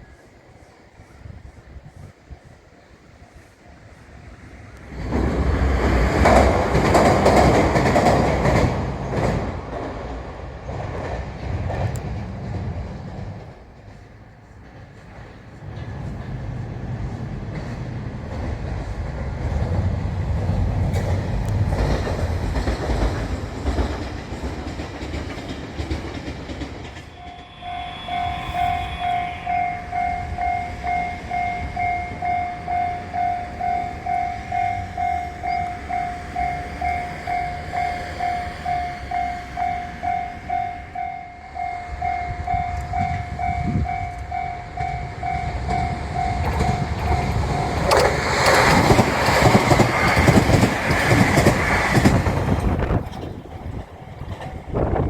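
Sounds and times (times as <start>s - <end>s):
train rumbling and clacking: 0.0s - 55.0s
railroad crossing bell ringing: 26.6s - 50.3s.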